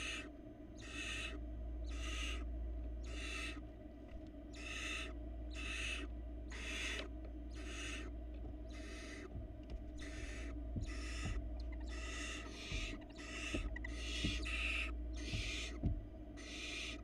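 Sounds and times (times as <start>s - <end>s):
owl nestlings hissing begging calls: 0.0s - 3.7s, 4.5s - 17.0s
soft knocks in nest box: 9.3s - 12.0s, 12.7s - 16.1s.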